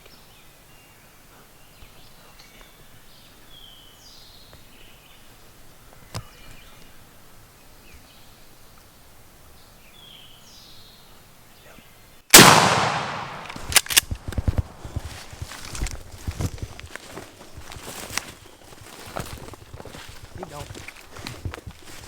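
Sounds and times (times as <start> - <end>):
shotgun blast with echo: 12.3 - 14.0
rustling: 12.4 - 22.0.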